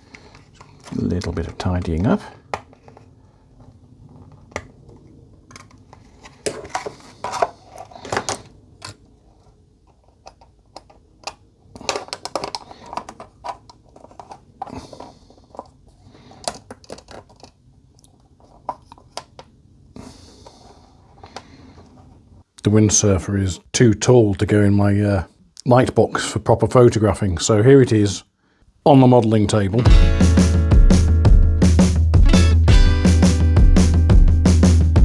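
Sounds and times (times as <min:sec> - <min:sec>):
plastic model parts clicking and scraping: 0:00.0 - 0:03.1, 0:04.1 - 0:19.5.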